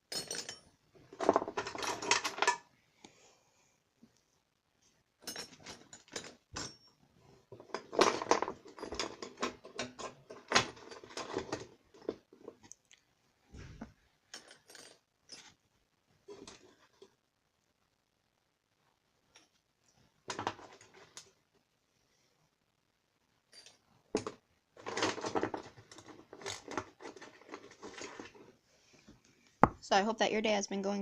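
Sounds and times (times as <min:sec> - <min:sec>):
metal hand tools clinking: 0:00.1 - 0:00.7.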